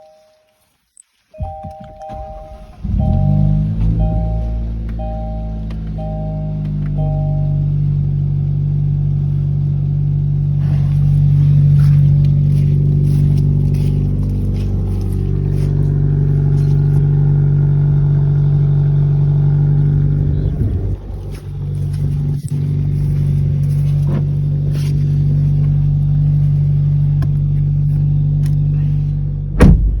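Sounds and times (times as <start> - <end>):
car engine idling: 1.4 - 30.0
loud knock: 29.6 - 30.0.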